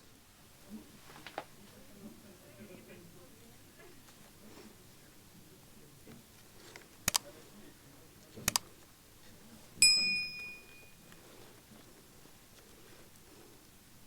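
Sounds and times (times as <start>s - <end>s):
sharp double clicks: 8.5s - 8.7s
metal object ringing ping: 9.8s - 11.0s.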